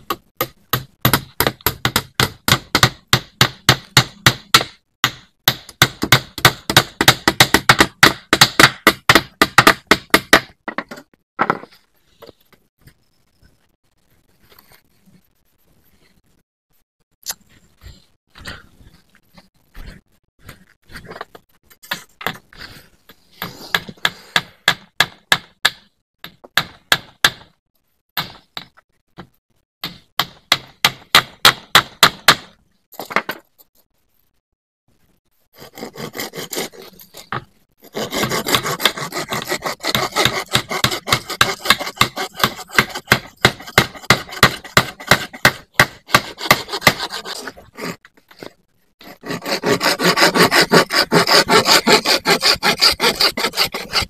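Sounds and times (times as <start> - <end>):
rhythmic scraping on wood: 35.6 - 54.0.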